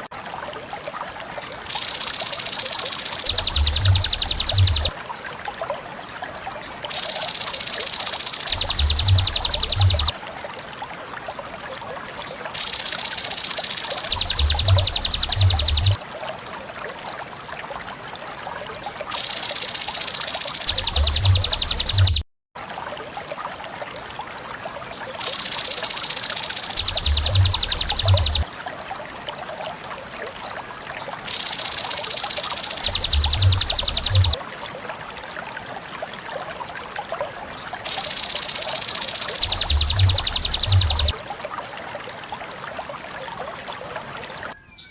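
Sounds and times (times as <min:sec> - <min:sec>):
faint natural background sounds: 0:00.0 - 0:44.9
high-pitched pulsed buzzing calls: 0:01.7 - 0:04.9, 0:06.9 - 0:10.1, 0:12.6 - 0:16.0, 0:19.1 - 0:22.2, 0:25.2 - 0:28.4, 0:31.3 - 0:34.4, 0:37.9 - 0:41.1
hissing background: 0:01.7 - 0:04.9, 0:06.9 - 0:10.1, 0:12.6 - 0:16.0, 0:25.2 - 0:28.4, 0:31.3 - 0:34.4.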